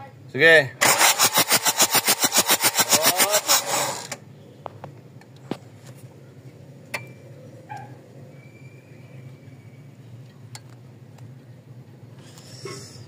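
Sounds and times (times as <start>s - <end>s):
starter cranking diesel engine: 0.8s - 4.2s.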